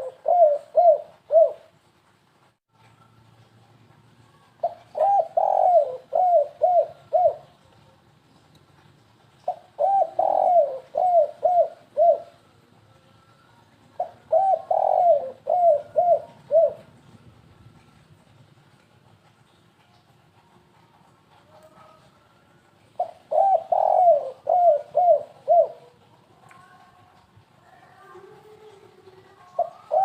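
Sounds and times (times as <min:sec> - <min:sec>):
dove cooing: 0:00.0 - 0:01.7, 0:04.6 - 0:07.6, 0:09.4 - 0:12.4, 0:14.0 - 0:17.0, 0:23.0 - 0:26.0, 0:27.7 - 0:30.0.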